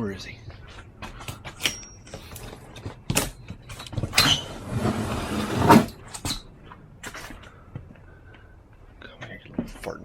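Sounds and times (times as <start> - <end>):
objects knocking and scraping: 3.7 - 6.4.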